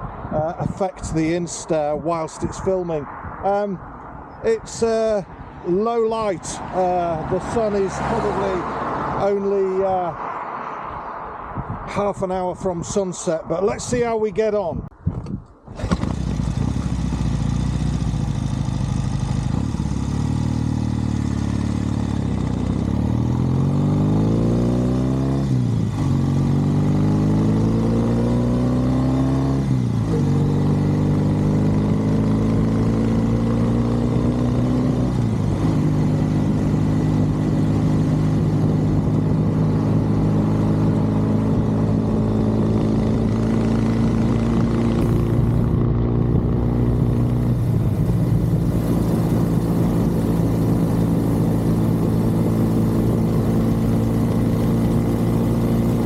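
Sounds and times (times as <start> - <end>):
motorcycle accelerating through gears: 15.7 - 56.0.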